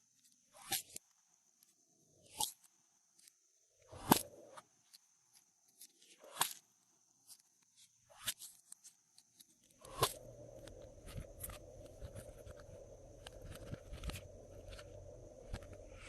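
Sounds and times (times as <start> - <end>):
steady low hum: 9.9 - 16.0.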